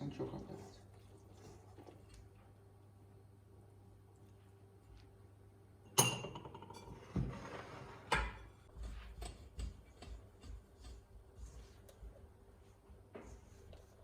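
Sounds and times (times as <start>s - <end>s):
ringing kitchenware clink: 6.0s - 7.0s.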